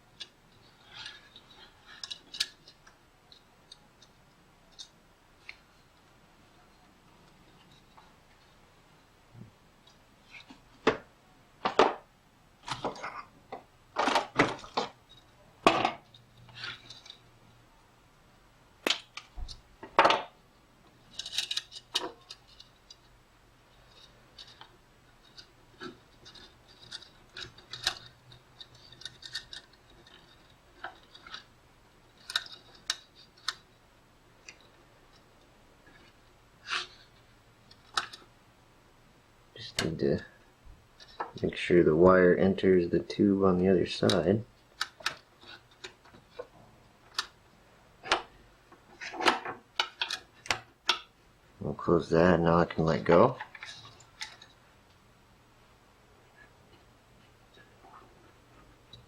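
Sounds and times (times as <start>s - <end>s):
welding wire clicks and rattles: 21.1s - 23.1s, 23.9s - 33.7s, 37.7s - 38.2s.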